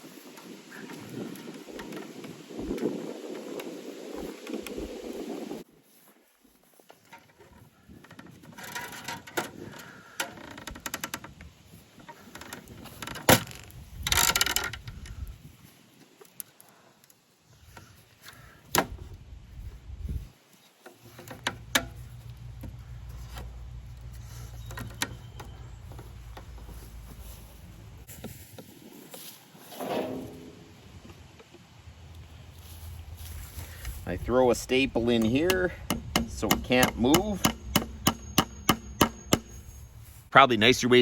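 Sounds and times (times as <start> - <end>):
knocks and rattles on wire fence: 21.0 - 27.4, 34.6 - 39.7.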